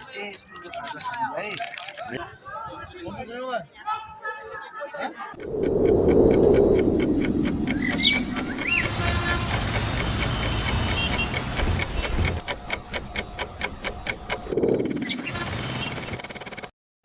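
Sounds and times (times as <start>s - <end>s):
low rumble: 5.4s - 10.2s
rapid even ticking: 5.4s - 12.4s.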